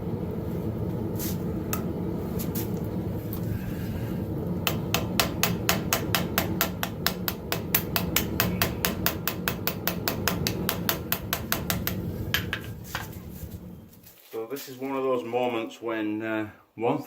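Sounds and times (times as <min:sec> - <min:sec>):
steady low rumble: 0:00.0 - 0:14.0
hammer striking metal on anvil: 0:04.6 - 0:12.6.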